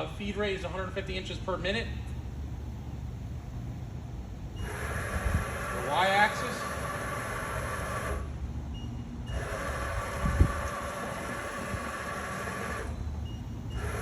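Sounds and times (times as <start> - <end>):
milling machine drive whining: 4.1 - 14.0.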